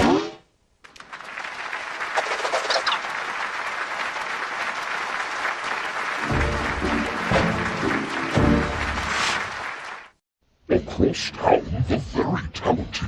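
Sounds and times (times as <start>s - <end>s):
audience clapping: 0.8s - 10.2s.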